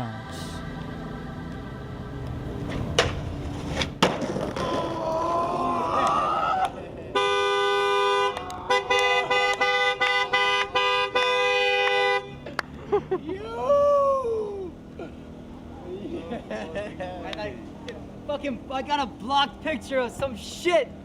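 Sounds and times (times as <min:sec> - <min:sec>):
car horn honking: 0:07.1 - 0:12.6.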